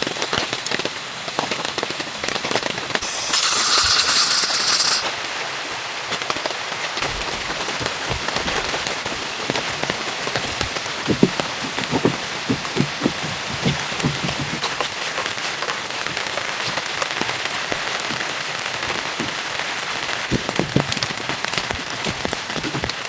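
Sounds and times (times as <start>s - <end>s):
rain falling: 0.0s - 23.0s
loud hiss: 3.0s - 6.1s
heavy drops knocking: 7.0s - 14.8s.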